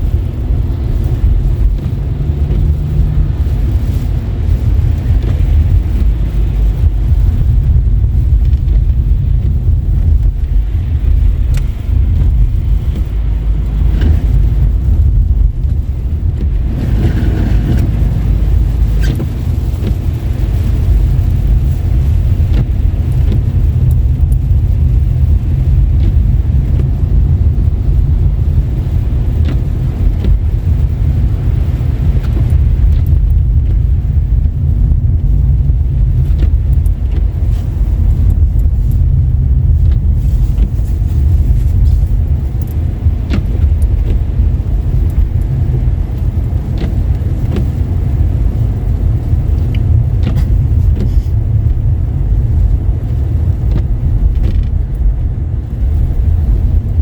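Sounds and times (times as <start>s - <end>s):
car tyres and engine rumble: 0.0s - 57.0s.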